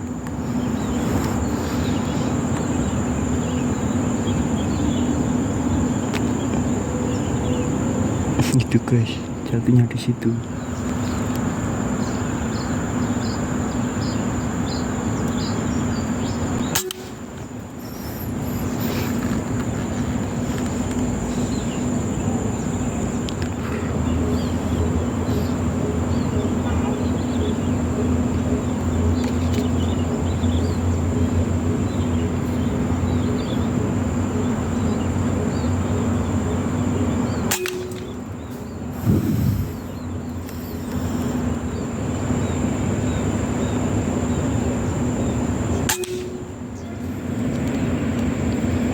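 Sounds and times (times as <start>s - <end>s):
high-pitched insect whine: 0.0s - 48.9s
insects chirping: 0.0s - 48.9s
low hum: 10.4s - 48.9s
sharp click: 16.7s - 17.2s, 37.5s - 38.2s, 45.9s - 46.4s.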